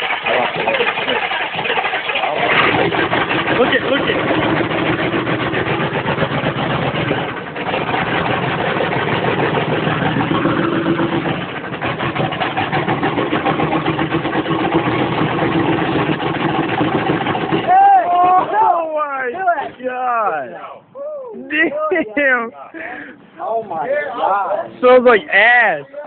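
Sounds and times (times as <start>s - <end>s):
diesel engine idling with clatter: 0.0s - 19.8s.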